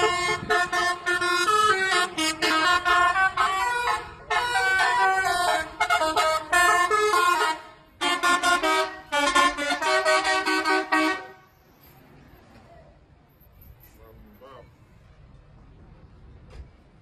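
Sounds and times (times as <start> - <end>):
bus horn playing a tune: 0.0 - 11.6.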